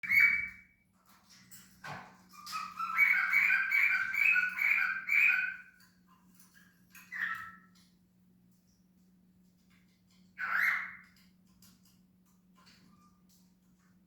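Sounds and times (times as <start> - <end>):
cockatiel whistling: 0.0 - 0.6, 2.6 - 5.6.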